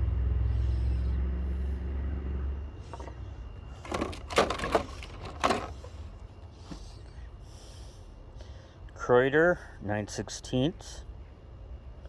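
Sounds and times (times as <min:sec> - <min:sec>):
metal wrenches clinking: 0:03.8 - 0:05.9.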